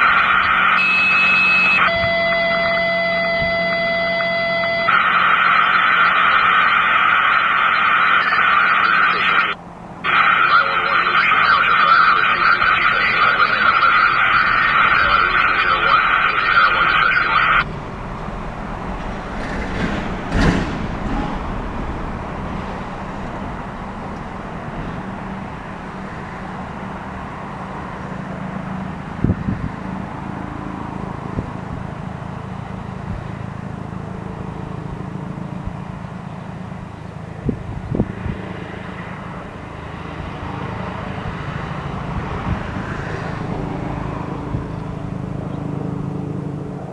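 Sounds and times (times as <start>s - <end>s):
loud tone: 0.0s - 17.7s
low hum: 0.0s - 46.9s
road traffic noise: 0.0s - 46.9s.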